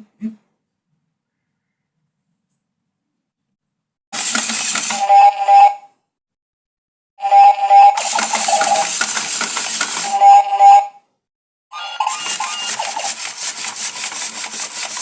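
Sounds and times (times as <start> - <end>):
telephone bell ringing: 7.2 - 11.0, 11.8 - 13.2.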